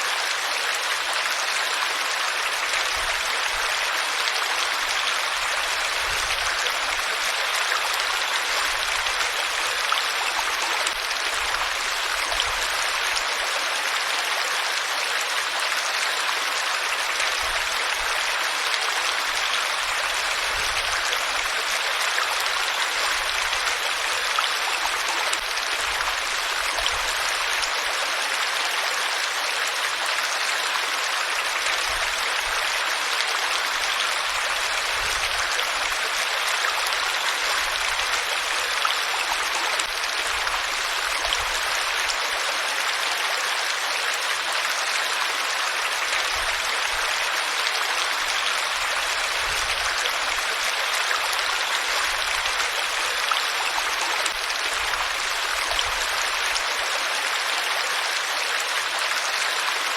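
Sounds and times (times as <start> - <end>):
stream water rushing: 0.0 - 59.9.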